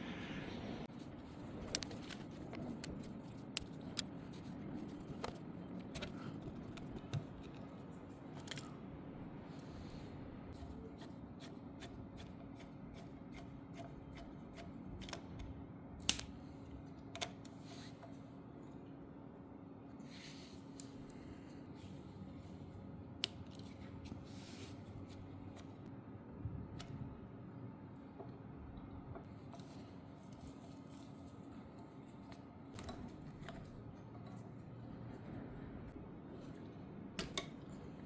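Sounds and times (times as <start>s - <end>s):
faint steady hum: 0.0s - 38.0s
small parts clicking and tapping: 1.6s - 8.8s.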